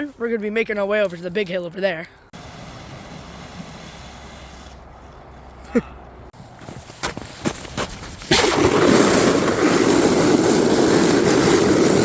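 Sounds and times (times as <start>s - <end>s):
sled sliding on snow: 2.4s - 5.4s, 6.6s - 12.0s.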